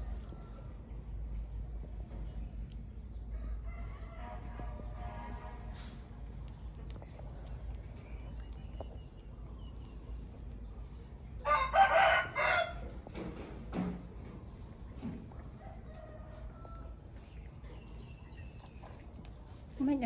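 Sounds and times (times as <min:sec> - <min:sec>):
rooster crowing: 0:00.0 - 0:00.9, 0:03.3 - 0:05.4, 0:11.4 - 0:13.0, 0:15.5 - 0:17.1.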